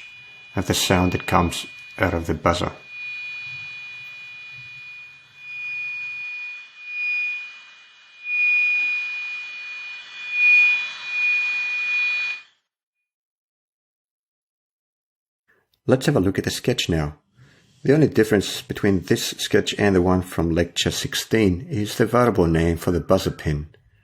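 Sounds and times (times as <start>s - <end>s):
high electronic buzzer: 0.0s - 12.5s.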